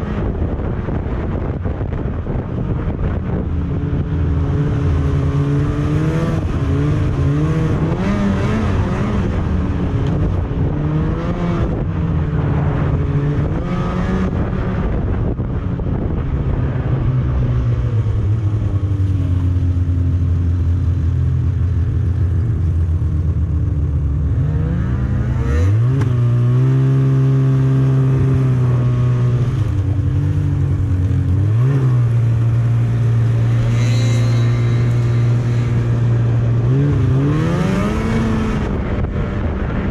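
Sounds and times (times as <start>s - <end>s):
snowmobile engine revving: 3.6s - 15.2s, 24.0s - 39.9s.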